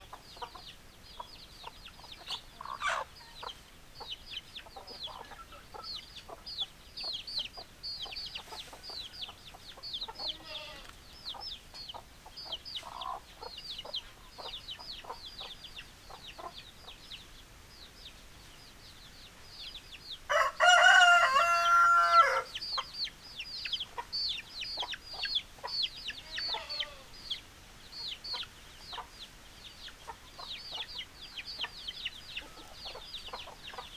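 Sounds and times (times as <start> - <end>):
chickens clucking: 0.0 - 33.9
chicks peeping: 0.0 - 33.9
rooster crowing: 20.3 - 22.6.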